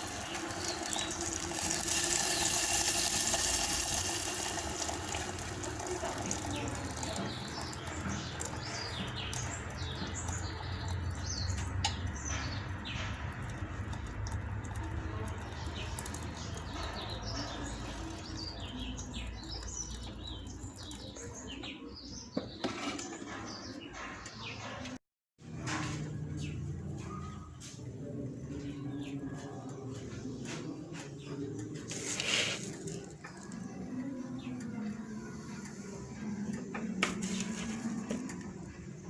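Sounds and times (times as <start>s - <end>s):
small birds chirping: 0.0s - 22.6s.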